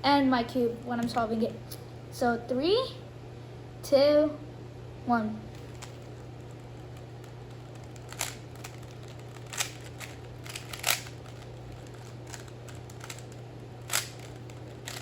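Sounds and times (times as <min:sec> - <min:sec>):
steady low hum: 0:00.0 - 0:15.0
plastic puzzle cube layers clicking: 0:05.6 - 0:15.0.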